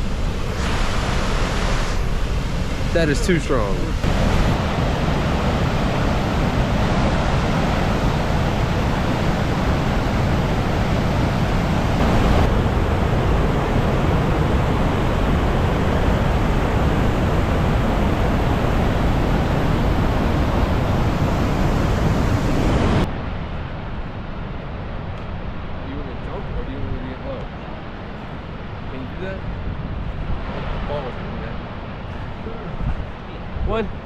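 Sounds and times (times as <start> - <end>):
powerful waterfall roaring: 0.0 - 24.3
wind buffeting microphone: 2.0 - 26.0, 27.6 - 34.0.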